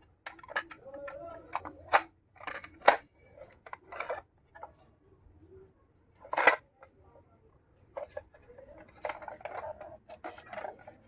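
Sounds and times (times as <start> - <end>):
plastic scraping: 8.0 - 11.0.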